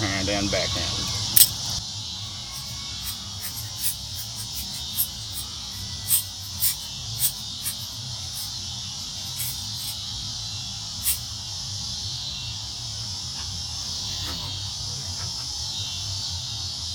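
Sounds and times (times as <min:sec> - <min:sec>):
crickets chirping: 0:00.0 - 0:16.9
butterfly knife clicking: 0:02.6 - 0:08.6, 0:09.2 - 0:10.0.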